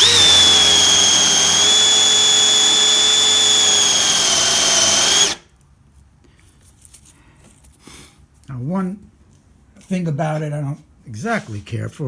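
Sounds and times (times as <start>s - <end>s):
power drill boring wood: 0.0s - 5.4s.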